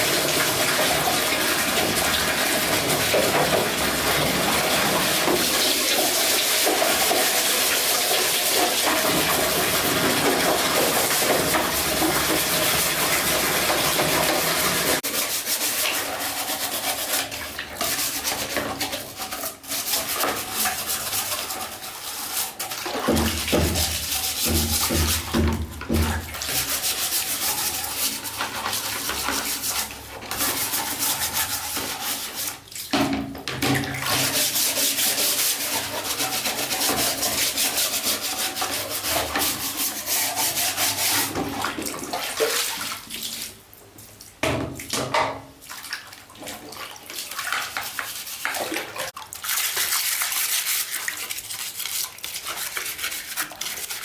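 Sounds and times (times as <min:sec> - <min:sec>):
scrubbing against hard surface: 0:06.5 - 0:32.9, 0:47.2 - 0:54.0.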